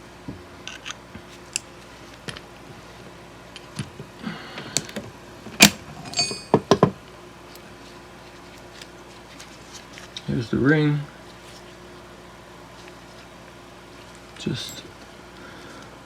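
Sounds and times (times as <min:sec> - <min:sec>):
small steel part ringing: 0:06.0 - 0:06.7.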